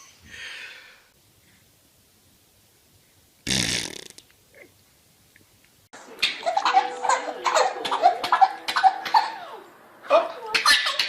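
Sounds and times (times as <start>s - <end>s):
baby farting: 3.4s - 4.7s.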